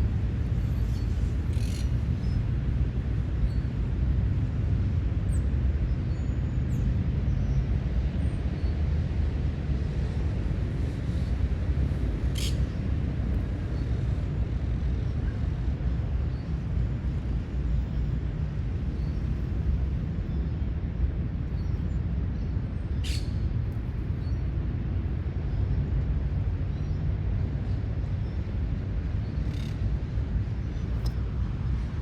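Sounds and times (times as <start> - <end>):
steady low rumble: 0.0 - 6.0, 6.6 - 32.0.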